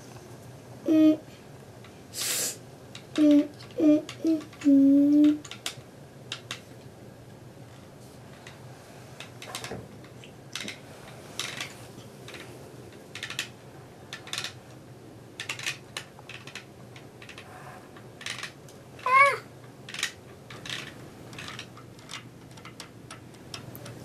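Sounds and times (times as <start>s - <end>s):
plastic toys clicking and clattering: 2.9s - 6.8s, 9.2s - 10.8s, 11.4s - 14.6s, 15.4s - 24.0s.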